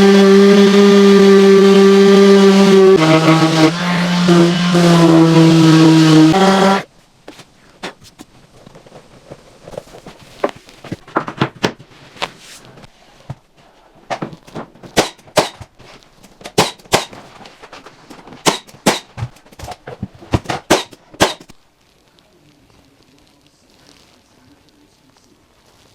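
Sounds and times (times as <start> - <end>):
nails being hammered into wood: 15.0 - 15.6, 16.4 - 17.2, 18.4 - 19.8, 20.4 - 21.5.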